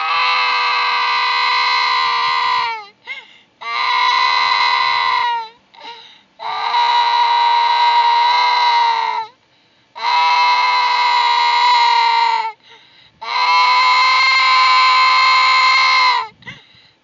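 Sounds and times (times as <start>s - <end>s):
child crying: 0.0s - 9.4s, 10.0s - 12.6s, 13.2s - 16.6s
gasping breaths: 2.9s - 3.6s, 5.8s - 6.4s, 12.5s - 13.4s, 16.3s - 17.0s.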